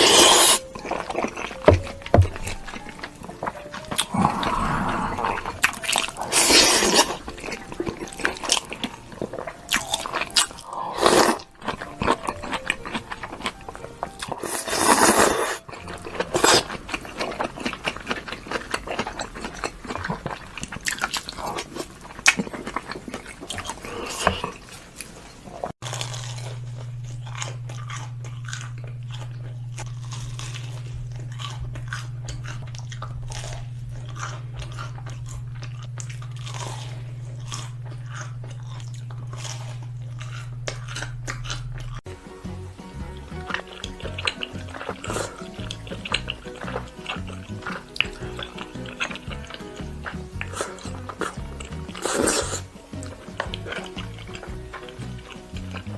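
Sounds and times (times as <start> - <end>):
chewing crunchy food: 0.0 - 55.9
steady low hum: 25.8 - 55.9.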